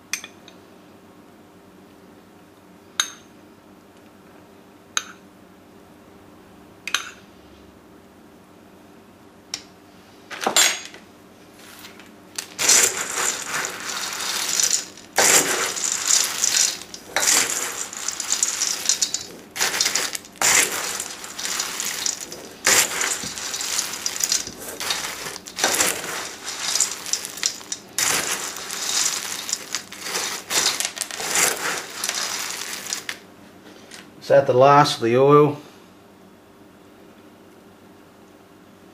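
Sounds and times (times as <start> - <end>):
cereal stirred in a mixing bowl: 12.4 - 33.2.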